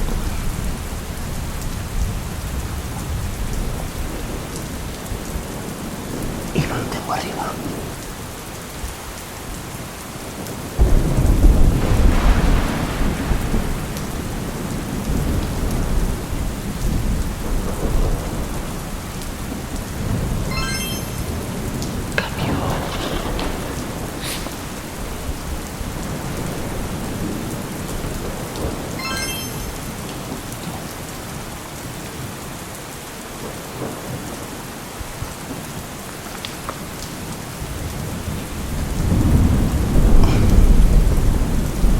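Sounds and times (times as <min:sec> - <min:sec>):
steady rain: 0:00.0 - 0:41.9
thunder rumbling: 0:10.8 - 0:20.5, 0:21.2 - 0:29.0, 0:37.7 - 0:41.9.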